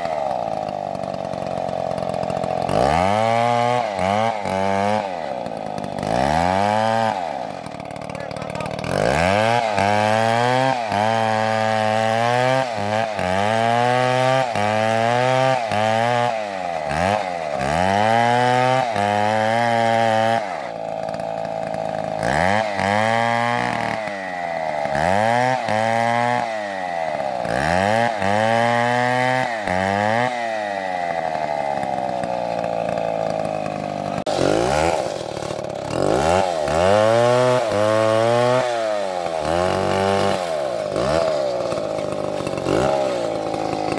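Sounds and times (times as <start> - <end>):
chainsaw cutting wood: 0.0 - 43.9.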